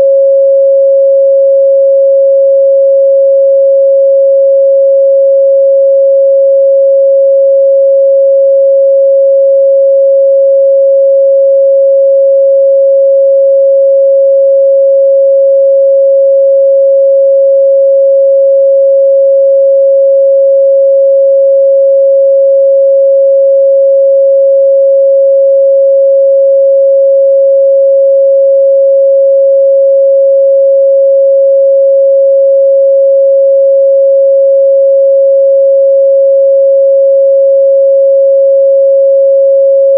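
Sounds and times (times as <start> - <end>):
sine-wave test tone: 0.0 - 39.9.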